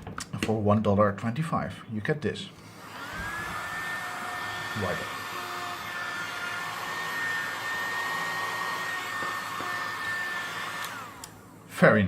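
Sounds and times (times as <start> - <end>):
mini vacuum cleaner whining: 2.6 - 11.7.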